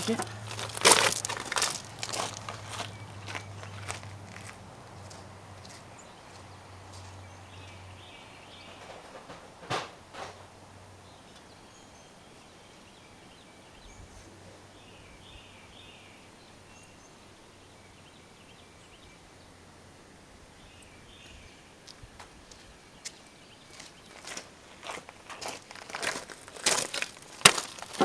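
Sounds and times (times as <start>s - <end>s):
birds chirping: 0.0s - 19.6s, 20.6s - 28.0s
sharp knocks: 8.7s - 10.4s.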